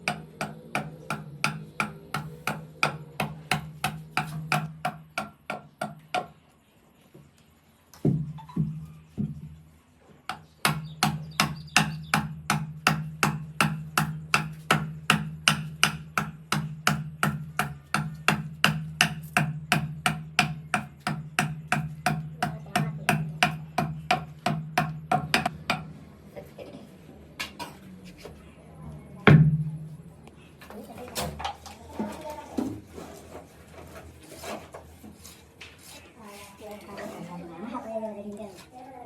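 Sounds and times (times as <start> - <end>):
hammering on wood: 0.0 - 6.4, 8.1 - 9.6, 10.3 - 25.9.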